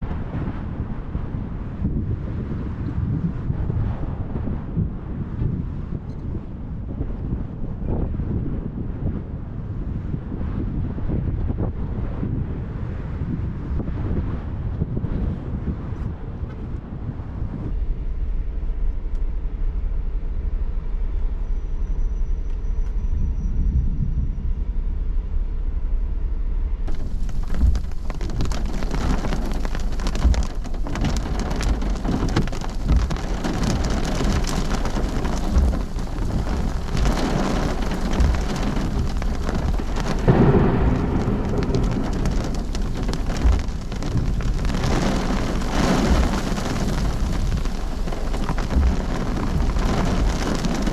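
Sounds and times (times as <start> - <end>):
wind rumbling on microphone: 0.0 - 50.9
heavy rain: 26.9 - 50.9.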